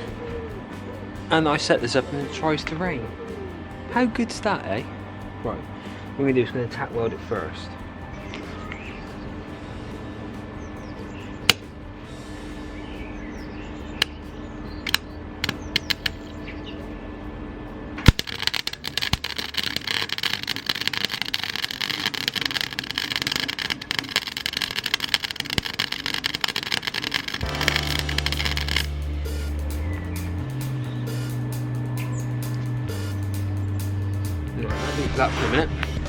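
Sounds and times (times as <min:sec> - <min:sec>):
steady hum: 0:00.0 - 0:36.0
welding arc crackling: 0:14.8 - 0:16.4, 0:18.0 - 0:36.0.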